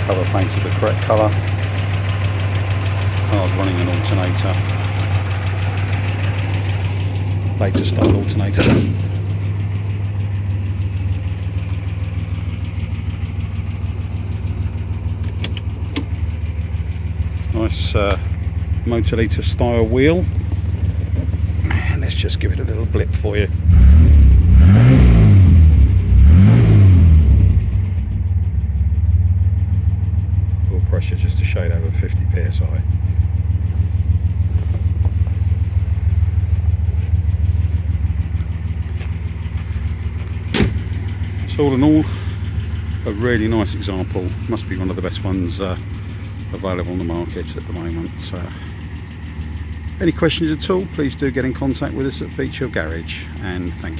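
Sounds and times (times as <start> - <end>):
car engine idling: 0.0 - 53.9.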